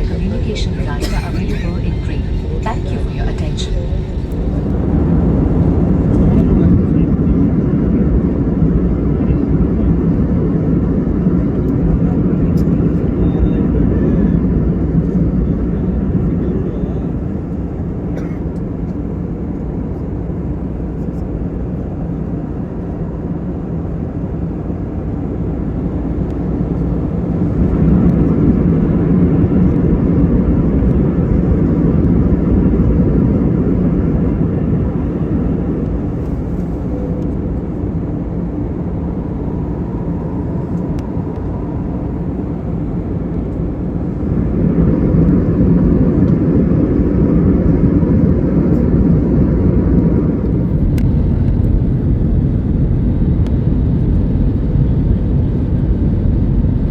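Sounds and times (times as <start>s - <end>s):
jet engines rumbling in cabin: 0.0s - 56.9s.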